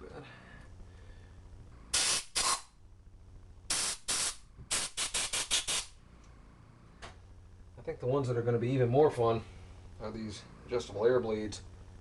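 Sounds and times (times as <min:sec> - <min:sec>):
compressed air blasts: 0:01.8 - 0:02.8, 0:03.7 - 0:06.0.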